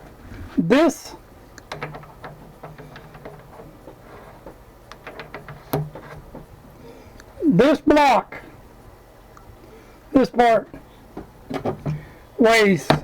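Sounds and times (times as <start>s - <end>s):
metal parts clicking and clinking: 1.6s - 6.8s.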